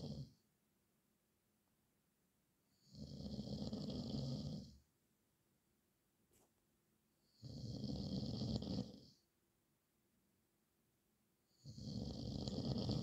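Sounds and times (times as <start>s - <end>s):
man snoring: 0.0s - 0.4s, 2.8s - 4.8s, 7.4s - 9.2s, 11.6s - 13.0s.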